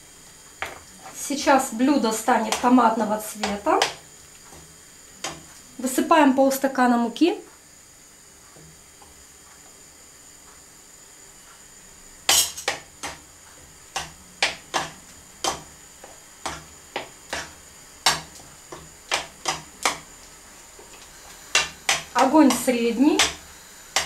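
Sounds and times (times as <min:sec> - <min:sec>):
spoon knocking on frying pan: 0:13.9 - 0:20.1, 0:21.5 - 0:24.0.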